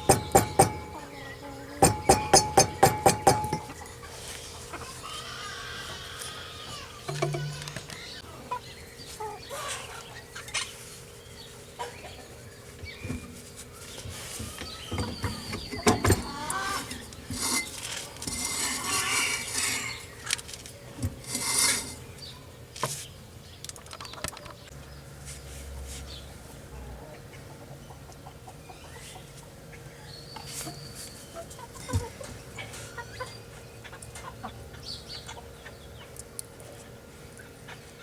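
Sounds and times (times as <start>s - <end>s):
chickens clucking: 0.0s - 18.1s, 26.8s - 38.0s.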